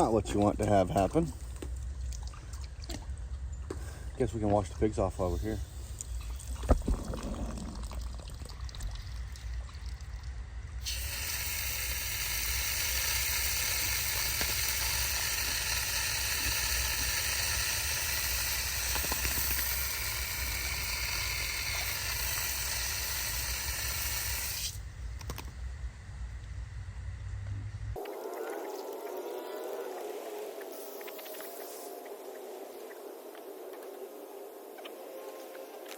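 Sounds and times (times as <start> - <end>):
pressurized water spraying hiss: 10.8 - 24.8, 29.2 - 32.9.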